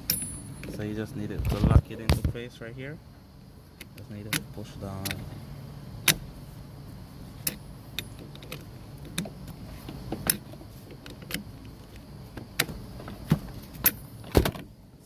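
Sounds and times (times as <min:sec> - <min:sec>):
steady low hum: 0:00.0 - 0:15.0
seatbelt parts clicking: 0:03.7 - 0:05.4, 0:06.0 - 0:06.3, 0:07.4 - 0:14.7.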